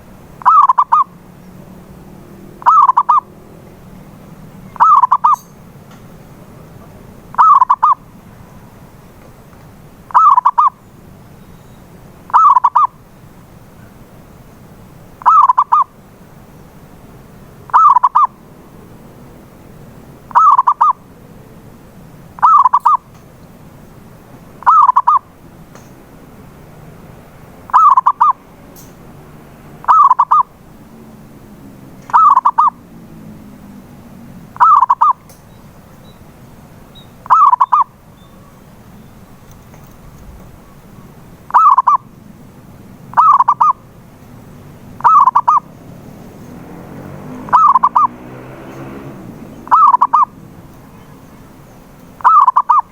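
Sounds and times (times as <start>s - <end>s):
dove cooing: 0.4s - 1.2s, 2.6s - 3.8s, 4.7s - 5.5s, 7.3s - 8.0s, 10.1s - 10.8s, 12.3s - 13.0s, 15.2s - 15.9s, 17.7s - 18.4s, 20.3s - 21.0s, 22.4s - 23.0s, 24.6s - 25.3s, 27.7s - 28.5s, 29.8s - 30.6s, 32.0s - 32.9s, 34.6s - 35.2s, 37.2s - 37.9s, 41.5s - 42.1s, 43.1s - 43.9s, 45.0s - 46.5s, 47.4s - 48.2s, 48.8s - 52.9s.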